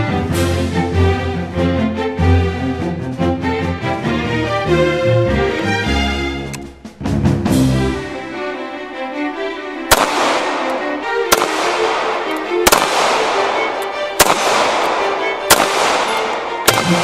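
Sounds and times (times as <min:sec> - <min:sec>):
background music: 0:00.0 - 0:17.0
sharp ringing bangs: 0:09.9 - 0:17.0.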